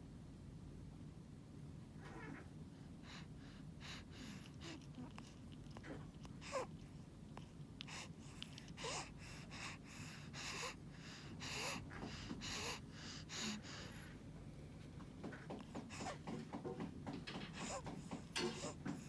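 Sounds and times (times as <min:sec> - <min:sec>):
wheezy squeaky breathing: 0:02.1 - 0:06.8, 0:07.4 - 0:14.2, 0:15.7 - 0:16.4, 0:17.3 - 0:19.0.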